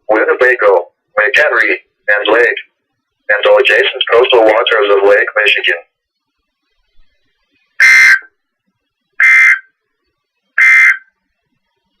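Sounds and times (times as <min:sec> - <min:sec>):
short data bursts: 0:09.2 - 0:09.8, 0:10.5 - 0:11.2.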